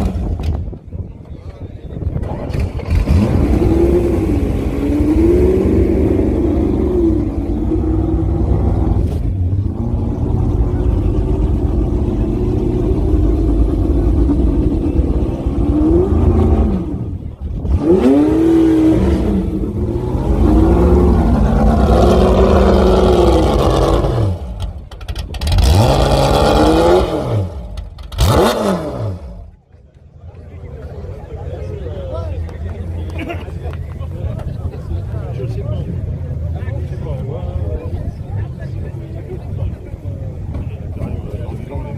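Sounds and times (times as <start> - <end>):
car engine revving: 2.2 - 29.6.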